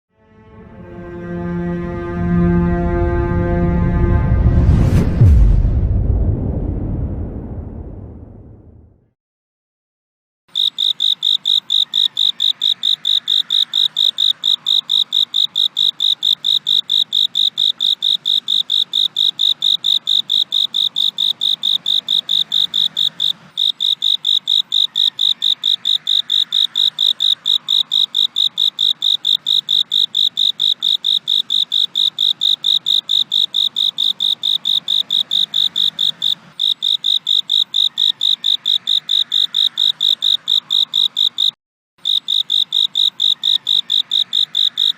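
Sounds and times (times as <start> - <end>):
cricket chirping: 10.5 - 44.9.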